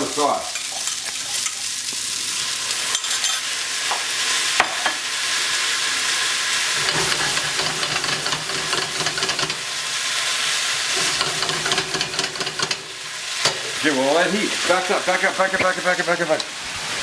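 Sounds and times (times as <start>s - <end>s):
food sizzling in frying pan: 0.0s - 17.0s.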